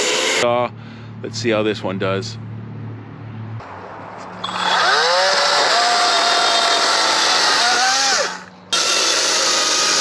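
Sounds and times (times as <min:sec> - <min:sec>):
chainsaw cutting wood: 0:00.0 - 0:00.4, 0:04.4 - 0:10.0.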